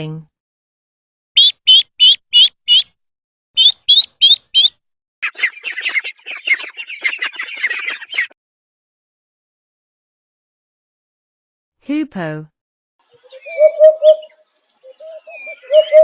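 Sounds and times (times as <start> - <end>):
duckling peeping: 1.4 - 2.9, 3.6 - 8.3
fast chatter of lower calls: 3.6 - 8.3.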